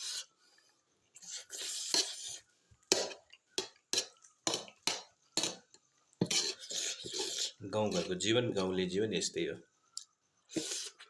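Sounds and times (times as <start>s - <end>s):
rustling hiss: 0.0s - 2.7s.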